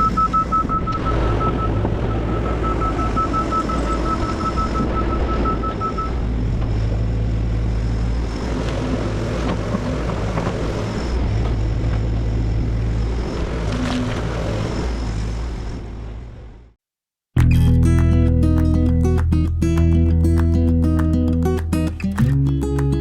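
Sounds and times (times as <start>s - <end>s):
excavator diesel engine droning: 1.4s - 16.5s.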